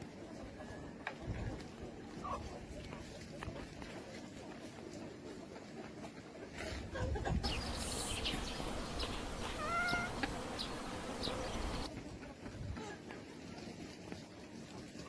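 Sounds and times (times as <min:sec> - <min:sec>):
chickens clucking: 0:07.2 - 0:11.9
short wavering chicken call: 0:07.5 - 0:11.8.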